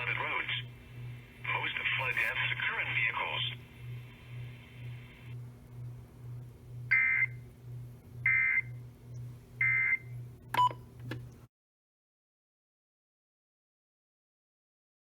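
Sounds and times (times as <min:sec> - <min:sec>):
low pulsing hum: 0:00.0 - 0:11.5.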